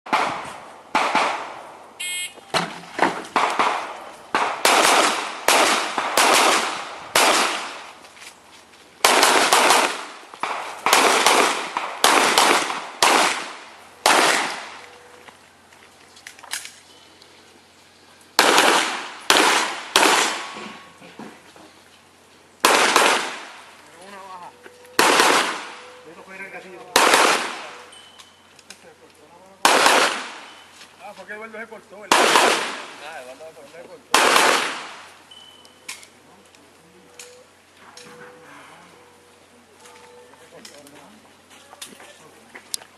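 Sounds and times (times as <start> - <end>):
pistol shots echoing: 0.1 - 1.6, 3.4 - 7.9, 9.0 - 14.8, 18.4 - 20.6, 22.6 - 23.6, 25.0 - 25.8, 26.9 - 27.8, 29.6 - 30.6, 32.1 - 33.0, 34.1 - 35.1
short high electronic beep: 2.0 - 2.5.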